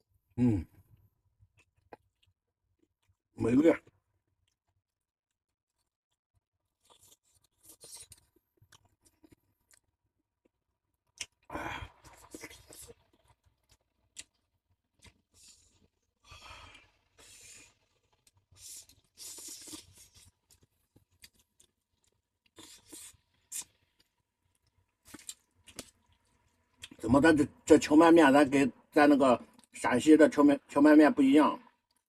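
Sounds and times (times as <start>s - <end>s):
chewing: 6.8s - 9.9s, 11.0s - 27.0s
person slurping soup: 18.5s - 20.2s.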